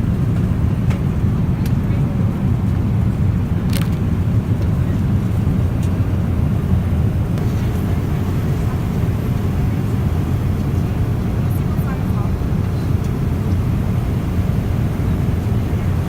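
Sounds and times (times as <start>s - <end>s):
airliner cabin rumble: 0.0s - 16.0s.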